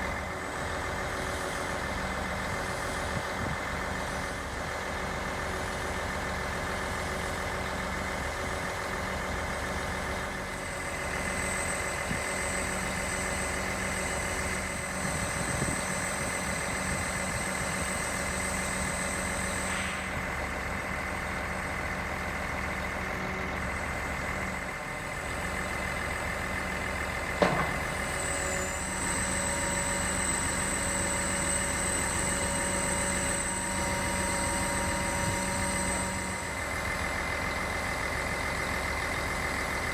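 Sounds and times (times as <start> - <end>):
diesel engine running: 0.0 - 39.9
thin high whine: 28.2 - 36.8.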